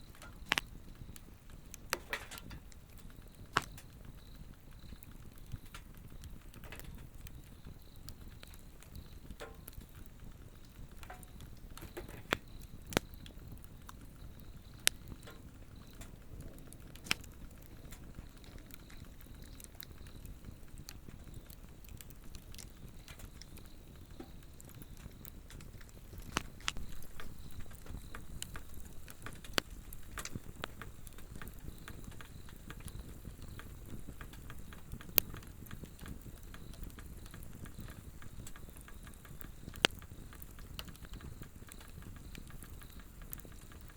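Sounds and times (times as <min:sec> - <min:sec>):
fire crackling and popping: 0:00.0 - 0:43.9
fire rushing: 0:00.0 - 0:43.9
high insect trill: 0:07.2 - 0:16.1, 0:22.4 - 0:43.7.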